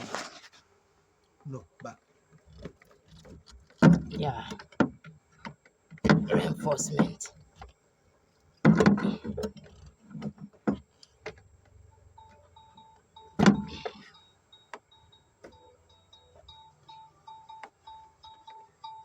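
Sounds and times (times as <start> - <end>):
clicks and knocks of car work: 1.8 - 7.8, 8.5 - 18.0
short electronic beeps: 11.9 - 19.0.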